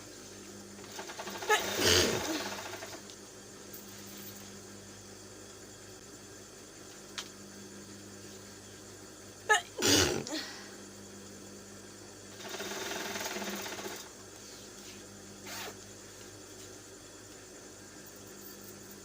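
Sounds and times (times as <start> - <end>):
person sneezing: 9.5 - 10.6
nose blowing: 9.8 - 10.4.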